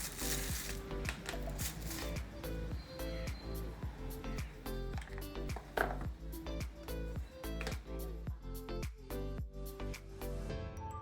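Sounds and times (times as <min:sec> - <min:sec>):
kick drum: 0:05.5 - 0:09.6.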